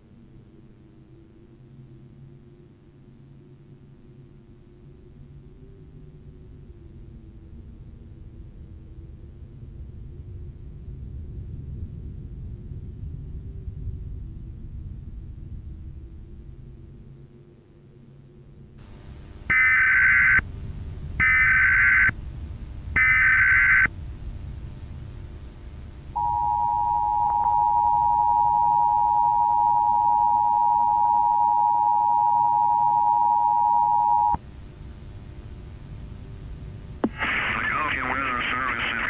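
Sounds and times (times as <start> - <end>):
faint static hiss: 18.4 - 39.0
data tone bursts: 18.9 - 22.2, 22.8 - 24.0, 25.1 - 39.0
two-tone attention signal: 19.5 - 20.4, 26.2 - 34.4.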